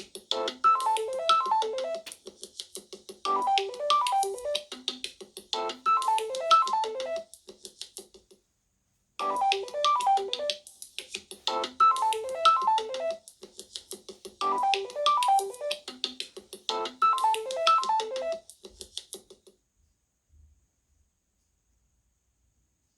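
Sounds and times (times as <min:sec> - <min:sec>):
phone ringtone melody: 0:00.4 - 0:02.1, 0:03.3 - 0:04.6, 0:05.6 - 0:07.2, 0:09.2 - 0:10.5, 0:11.5 - 0:13.2, 0:14.4 - 0:15.8, 0:16.8 - 0:18.4.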